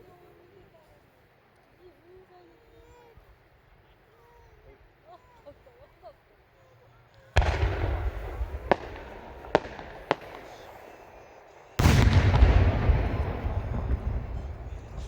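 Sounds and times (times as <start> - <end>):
loud echoing firework boom: 7.4 - 15.0
sharp firework cracks: 7.4 - 15.0.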